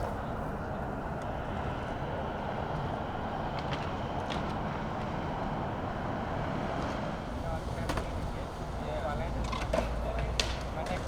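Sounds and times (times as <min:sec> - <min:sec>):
skateboard wheels rolling on concrete: 0:00.0 - 0:11.0
skateboard clacks: 0:03.0 - 0:11.0.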